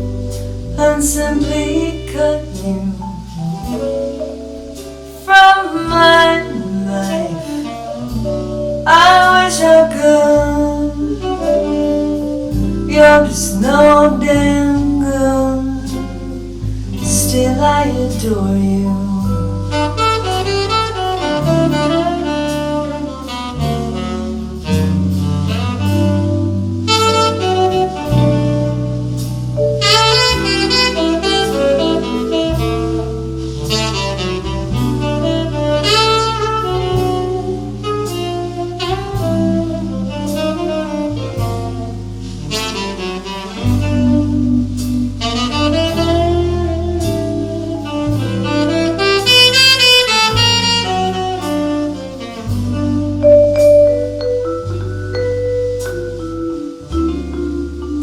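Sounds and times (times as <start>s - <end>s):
bass line: 0.0s - 58.0s
tenor saxophone solo: 0.0s - 58.0s.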